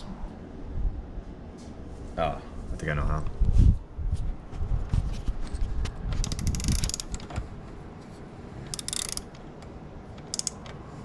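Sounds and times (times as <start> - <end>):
ratchet wrench clicking: 6.2 - 7.3, 8.7 - 10.8.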